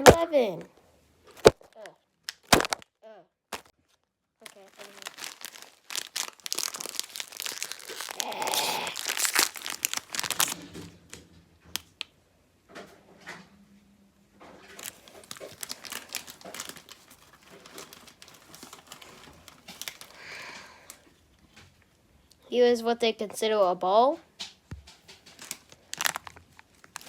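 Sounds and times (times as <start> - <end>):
plastic snack bag crinkling: 1.3 - 11.1, 14.6 - 21.5, 25.0 - 27.0.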